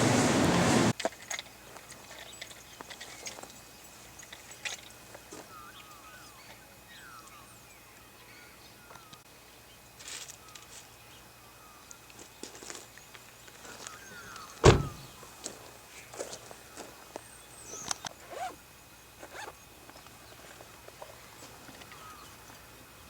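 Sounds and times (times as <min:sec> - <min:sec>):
birds chirping faintly: 0:01.5 - 0:15.4.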